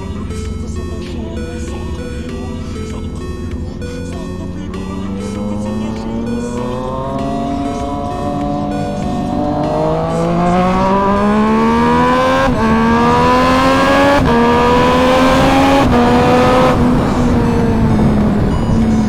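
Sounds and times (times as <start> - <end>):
motorcycle engine accelerating: 0.0 - 19.0.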